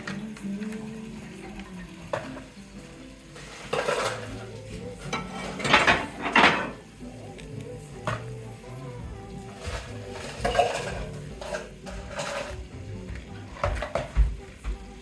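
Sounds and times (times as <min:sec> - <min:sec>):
background music: 0:00.0 - 0:15.0
utensils scraping and clattering on dish: 0:02.1 - 0:06.9, 0:09.4 - 0:14.3.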